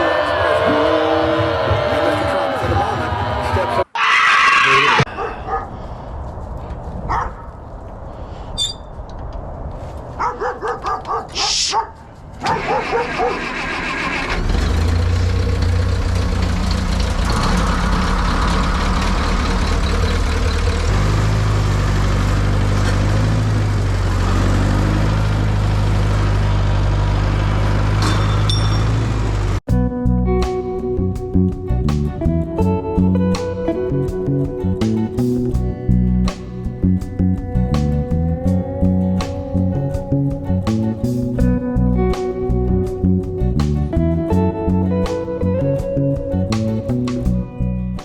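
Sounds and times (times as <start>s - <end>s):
skid steer engine starting: 12.4s - 29.6s.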